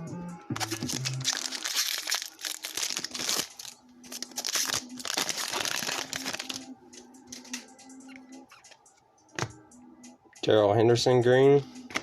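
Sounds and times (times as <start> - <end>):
foil wrapper crinkling and tearing: 0.6 - 6.6.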